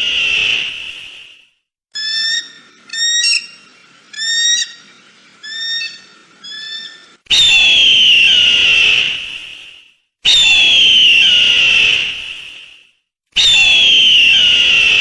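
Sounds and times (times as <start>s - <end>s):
eagle screaming: 2.0s - 3.6s, 4.2s - 4.8s, 5.4s - 9.0s.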